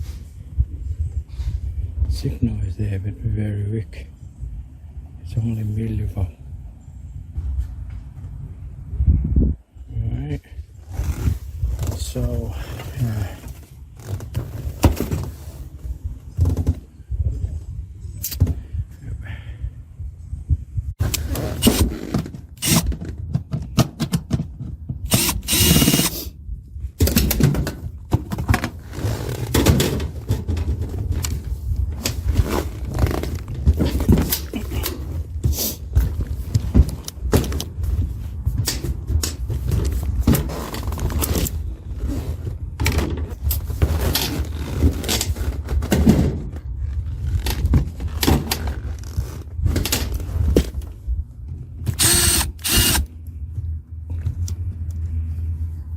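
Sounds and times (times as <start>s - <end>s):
steady low rumble: 15.6s - 21.8s, 44.6s - 55.9s.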